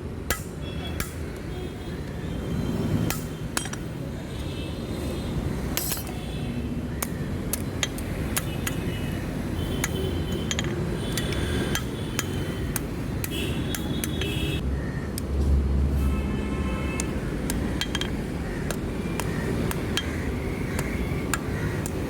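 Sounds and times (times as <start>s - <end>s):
hammer striking metal: 0.3s - 1.2s, 3.1s - 3.9s, 17.5s - 22.0s.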